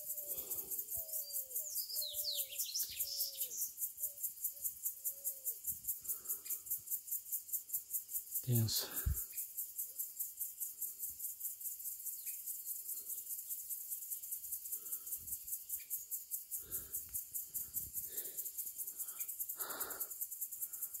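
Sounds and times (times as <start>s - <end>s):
crickets chirping: 0.0s - 21.0s.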